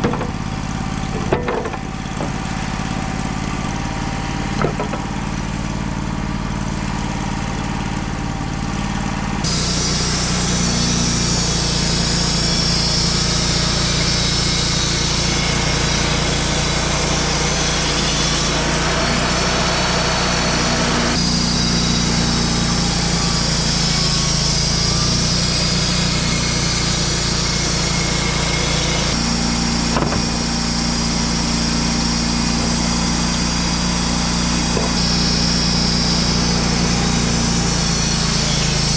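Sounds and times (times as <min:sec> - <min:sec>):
sawmill engine running: 0:00.0 - 0:38.9.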